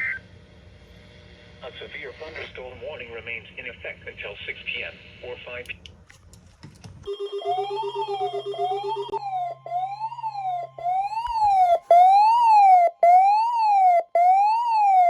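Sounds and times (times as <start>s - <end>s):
electronic siren sweeping in pitch: 7.4s - 15.0s.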